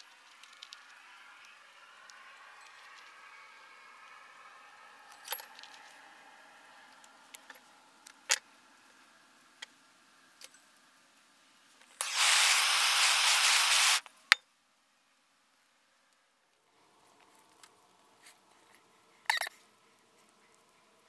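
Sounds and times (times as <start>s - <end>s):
small hard parts clicking: 0.0s - 3.2s
loud steady hiss: 12.0s - 14.3s.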